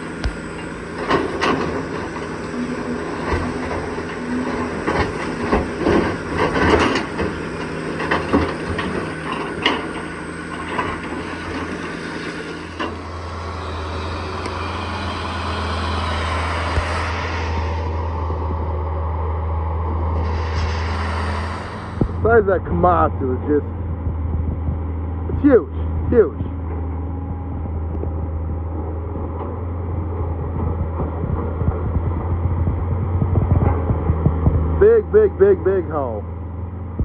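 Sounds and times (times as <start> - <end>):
diesel heavy equipment engine: 0.0 - 37.0
metallic clanks and knocks: 1.0 - 2.3, 3.2 - 13.1.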